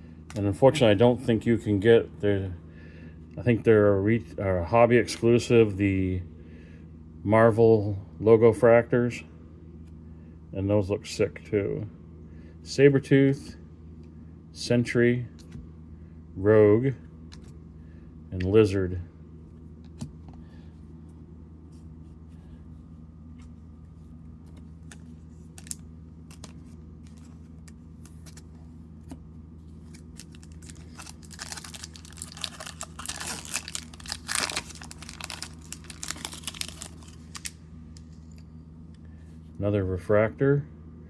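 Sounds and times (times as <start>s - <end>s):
steady low hum: 0.0s - 41.0s
wrapper being torn and crinkled: 24.9s - 27.3s, 29.9s - 37.6s.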